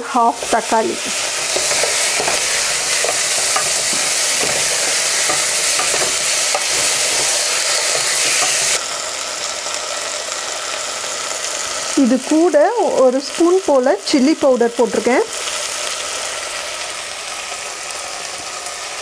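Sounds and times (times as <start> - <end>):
food sizzling in hot oil: 0.0 - 19.0
spoon scraping a pan: 0.3 - 8.8.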